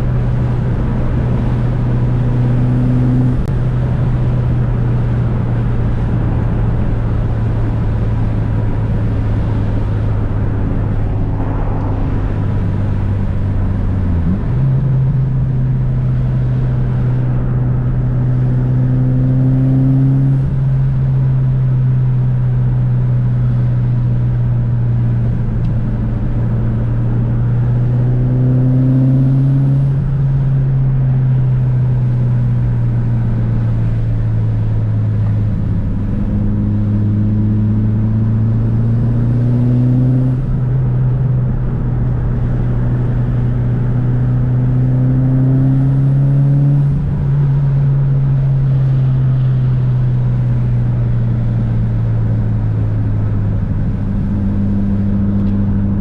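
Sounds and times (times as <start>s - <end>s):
turbocharged car engine running: 0.0s - 28.4s.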